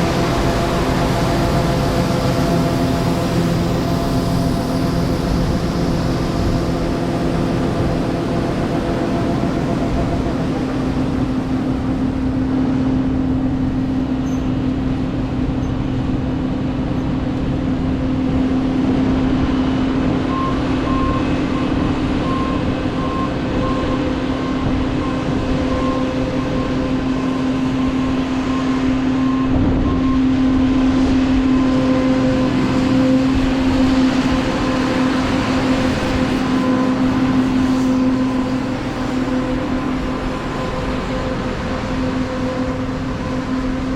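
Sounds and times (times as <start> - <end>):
combine harvester droning: 0.0 - 43.9.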